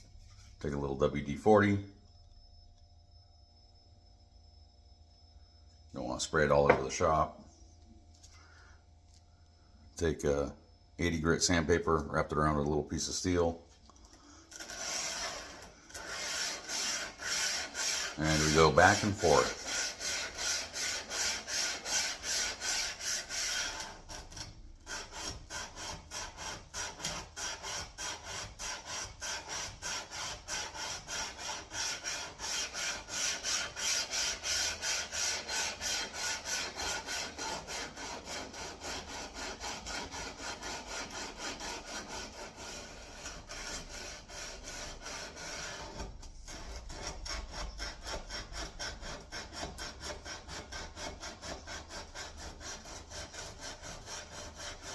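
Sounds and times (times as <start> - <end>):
sandpaper rasping on steel blade: 14.5 - 54.9.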